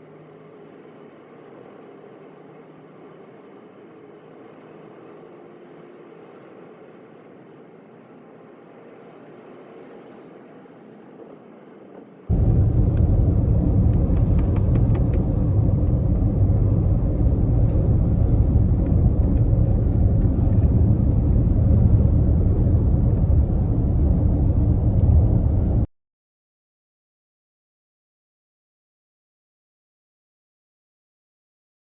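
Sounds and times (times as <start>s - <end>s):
wind and road noise: 0.0s - 25.9s.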